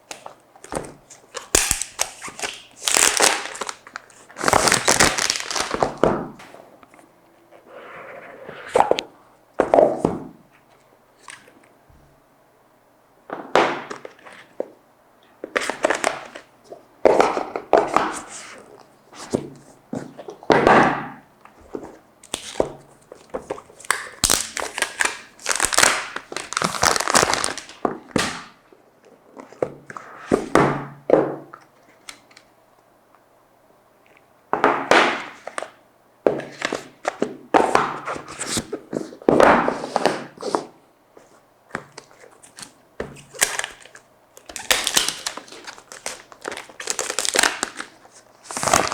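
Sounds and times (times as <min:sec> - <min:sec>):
plastic film crinkling and tearing: 0:01.3 - 0:06.0, 0:23.8 - 0:27.8, 0:42.0 - 0:48.9.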